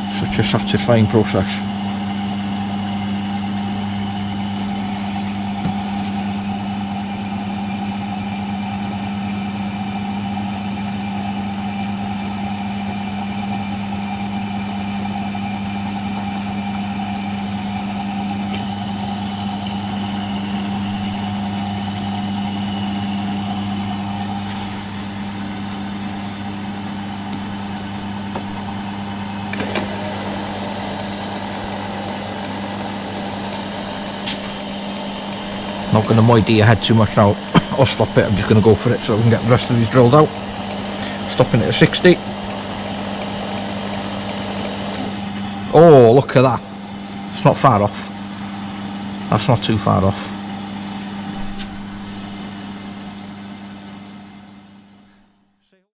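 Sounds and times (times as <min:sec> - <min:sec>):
milling machine motor hum: 0:00.0 - 0:55.4
high-pitched whine: 0:24.0 - 0:46.6.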